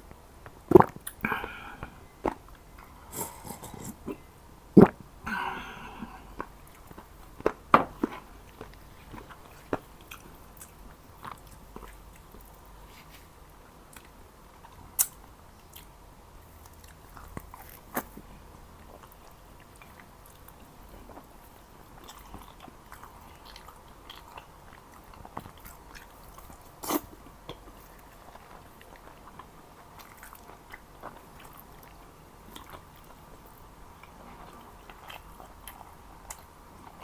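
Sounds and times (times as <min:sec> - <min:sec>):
wet mouth clicks: 0:02.8 - 0:04.2, 0:15.0 - 0:15.9
chewing and biting food: 0:06.3 - 0:13.3, 0:13.9 - 0:37.0.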